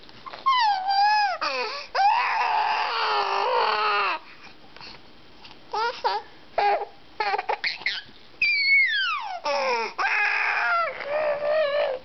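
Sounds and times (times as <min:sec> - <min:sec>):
baby squealing: 0:00.3 - 0:04.2, 0:06.6 - 0:12.0
baby babbling: 0:00.4 - 0:04.2, 0:05.8 - 0:12.0
baby crying: 0:00.5 - 0:04.2, 0:05.8 - 0:12.0.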